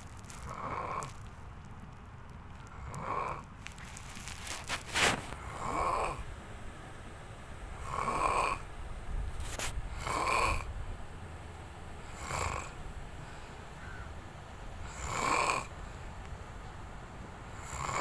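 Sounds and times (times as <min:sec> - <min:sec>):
person snoring: 0:02.9 - 0:03.5, 0:05.0 - 0:06.3, 0:07.7 - 0:10.8, 0:12.0 - 0:14.2, 0:14.8 - 0:16.0, 0:17.6 - 0:18.0.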